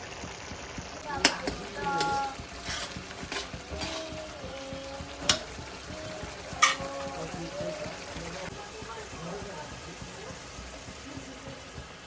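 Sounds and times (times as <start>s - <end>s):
food sizzling in a pan: 0.0s - 12.0s
spoon knocking against pan: 1.2s - 8.1s.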